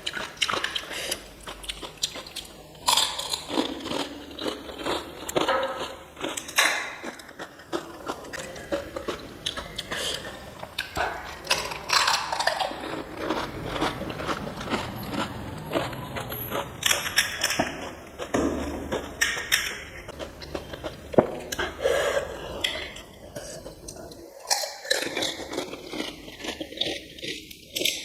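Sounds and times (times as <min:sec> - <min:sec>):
crunching crisp shells: 0:00.0 - 0:28.0.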